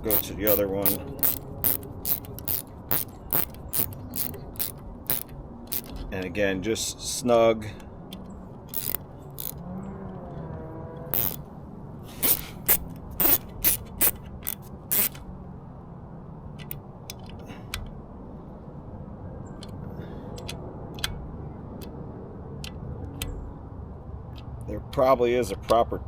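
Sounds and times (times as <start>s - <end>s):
ratchet clicking: 0.0s - 6.0s, 8.7s - 9.6s, 11.1s - 11.5s, 12.2s - 15.2s.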